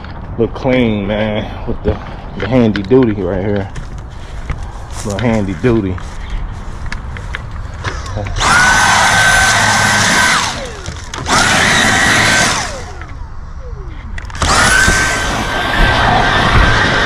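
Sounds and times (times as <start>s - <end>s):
hand-held vacuum cleaner whining: 8.4s - 13.2s.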